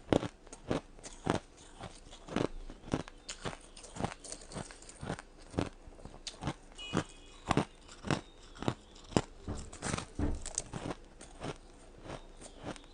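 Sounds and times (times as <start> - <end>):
ice crunching being chewed: 0.0 - 12.9.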